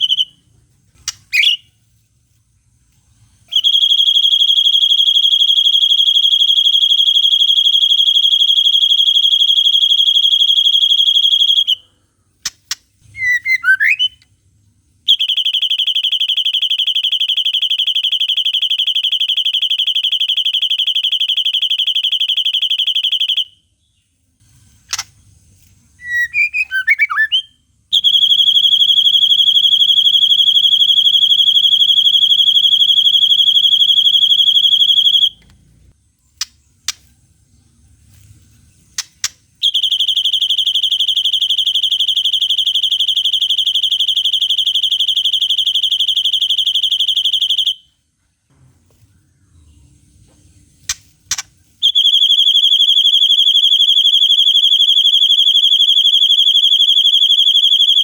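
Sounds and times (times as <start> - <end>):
bird high-pitched trills: 13.1 - 14.2, 26.0 - 27.5
sharp ticks: 50.9 - 51.5.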